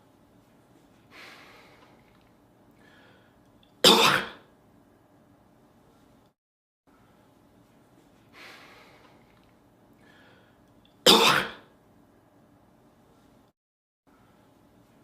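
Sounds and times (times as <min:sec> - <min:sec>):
soft breathy sound: 0:00.9 - 0:03.4, 0:06.9 - 0:10.7
man coughing: 0:03.9 - 0:04.4, 0:11.1 - 0:11.7.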